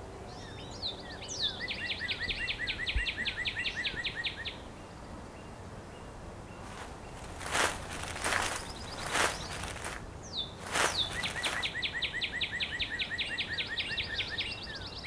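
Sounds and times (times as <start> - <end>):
faint outdoor ambience: 0.0 - 15.0
bird singing chirping notes: 6.0 - 15.0.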